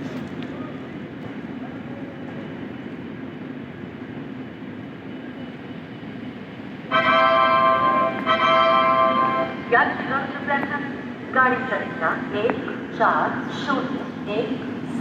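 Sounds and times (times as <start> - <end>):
train rumbling: 0.0 - 15.0
train horn blast: 6.9 - 9.6.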